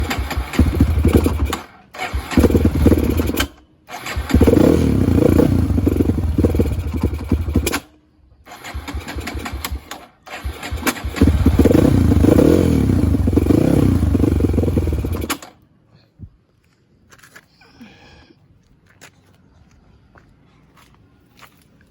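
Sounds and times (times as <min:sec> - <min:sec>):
motorcycle engine revving: 0:00.0 - 0:07.8, 0:08.5 - 0:15.4.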